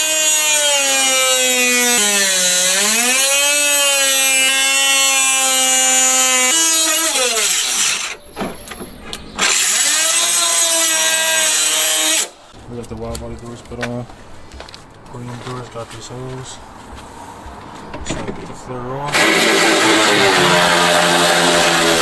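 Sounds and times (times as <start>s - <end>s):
power tool whining: 0.0s - 8.8s, 9.4s - 12.4s, 19.1s - 22.0s.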